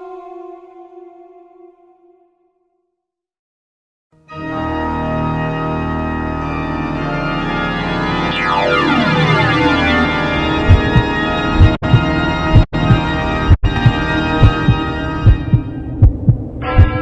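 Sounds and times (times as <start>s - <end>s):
sustained organ-like chord: 4.3s - 15.8s.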